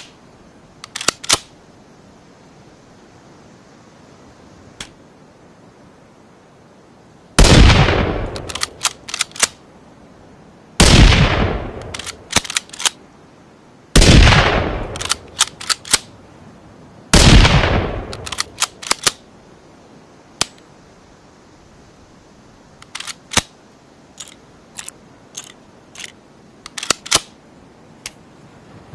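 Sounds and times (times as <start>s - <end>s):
rifle bolt metallic clicks: 0.8s - 1.5s, 8.3s - 9.6s, 11.8s - 13.0s, 14.8s - 16.1s, 18.1s - 19.2s, 22.8s - 23.5s, 24.2s - 27.4s
rifle shots ringing out: 7.4s - 8.8s, 10.8s - 12.7s, 14.0s - 16.1s, 17.2s - 19.2s.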